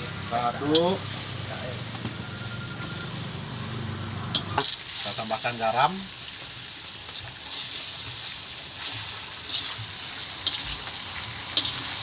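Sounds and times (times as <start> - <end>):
meat sizzling in a pan: 0.0 - 12.0
utensil tapping pan: 9.5 - 12.0.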